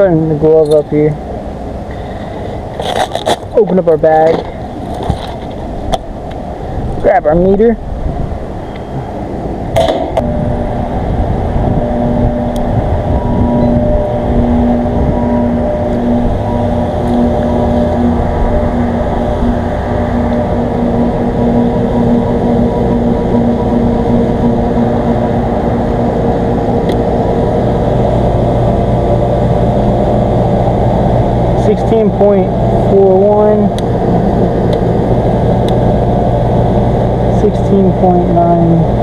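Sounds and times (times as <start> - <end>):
air conditioner unit humming: 0.0 - 39.0.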